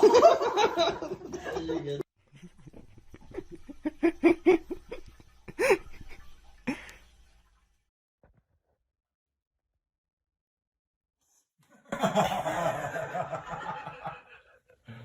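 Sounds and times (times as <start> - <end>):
person laughing: 0.0 - 6.9, 11.9 - 14.7.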